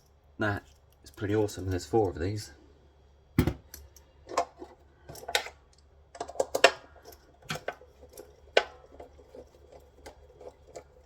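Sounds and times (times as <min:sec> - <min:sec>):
clicks and knocks of parts handled: 0:03.4 - 0:11.0
small clatters: 0:03.7 - 0:11.0.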